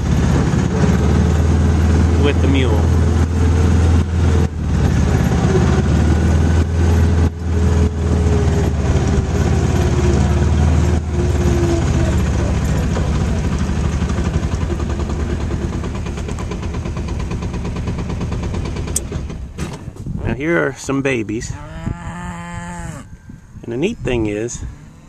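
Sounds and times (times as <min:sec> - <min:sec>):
utility vehicle engine droning: 0:00.0 - 0:25.0.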